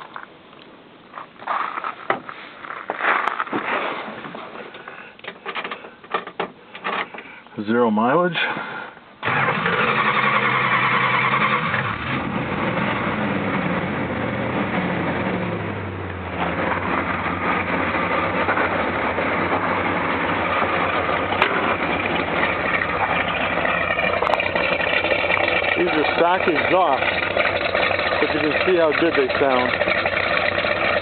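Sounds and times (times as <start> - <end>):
car engine idling: 9.2 - 31.0.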